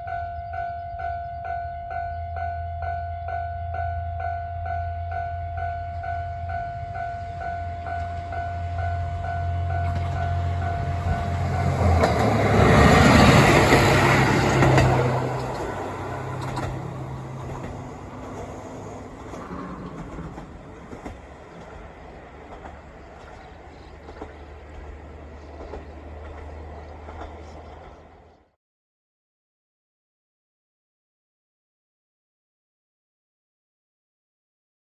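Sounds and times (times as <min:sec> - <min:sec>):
railcar engine and wheels: 0:00.0 - 0:28.6
wheels clacking over rail joints: 0:09.8 - 0:28.4.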